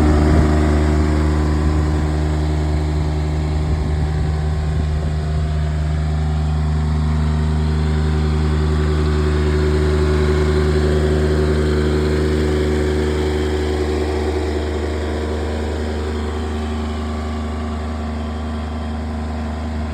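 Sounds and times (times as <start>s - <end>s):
tractor diesel engine running: 0.0s - 19.9s.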